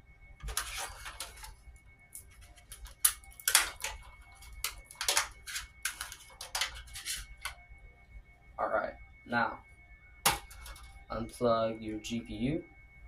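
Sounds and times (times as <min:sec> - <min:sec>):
cables rattling and scraping: 0:00.4 - 0:07.6.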